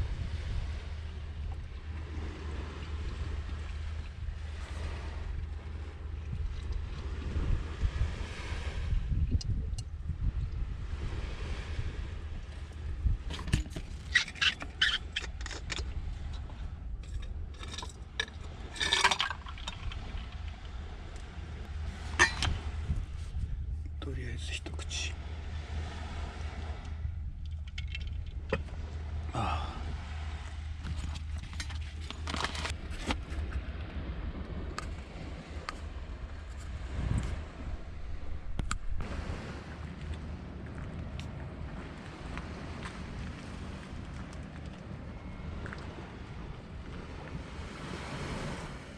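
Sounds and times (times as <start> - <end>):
low rumble of wind: 0.0 - 48.9
rustling scrape: 30.8 - 33.4.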